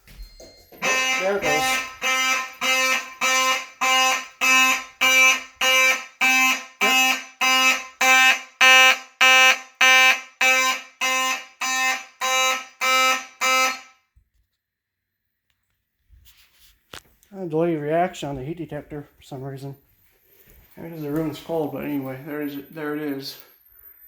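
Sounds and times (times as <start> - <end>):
pulsing fire alarm horn: 0.8 - 14.1.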